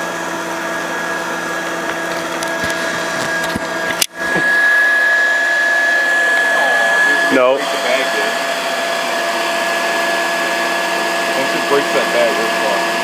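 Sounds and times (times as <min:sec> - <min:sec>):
vacuum cleaner motor whining: 0:00.0 - 0:13.0.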